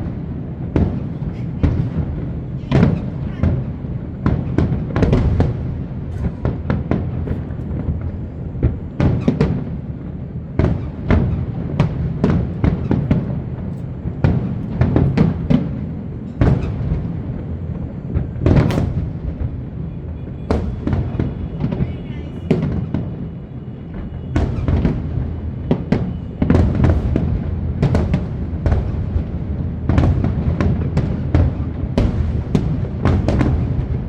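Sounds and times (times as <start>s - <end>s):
firework shells bursting: 18.5s - 19.6s
low rumble: 18.6s - 19.8s.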